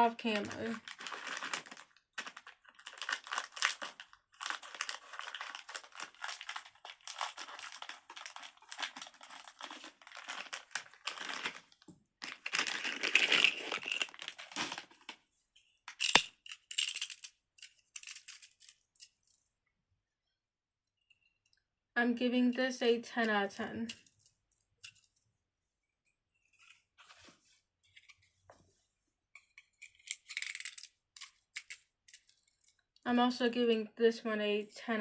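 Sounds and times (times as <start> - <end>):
plastic packaging crinkling: 0.0 - 15.2.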